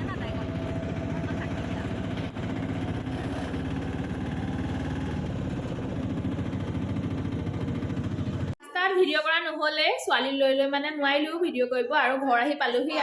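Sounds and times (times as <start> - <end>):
auto-rickshaw engine running: 0.0 - 8.6.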